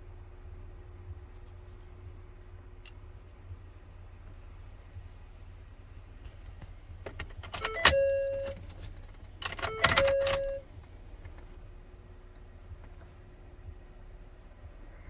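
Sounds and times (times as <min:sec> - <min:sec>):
keys jangling and clicking: 0:07.2 - 0:10.7.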